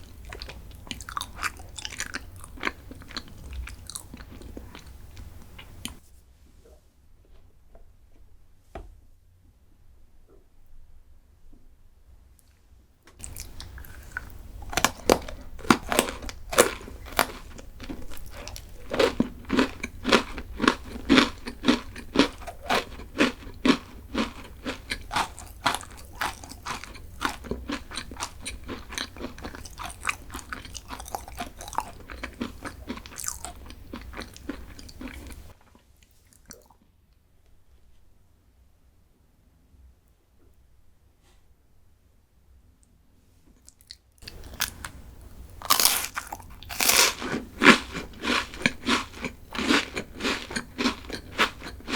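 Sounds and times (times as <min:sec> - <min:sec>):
chewing crunchy snack: 0:00.0 - 0:06.0, 0:13.2 - 0:36.9, 0:43.6 - 0:51.9.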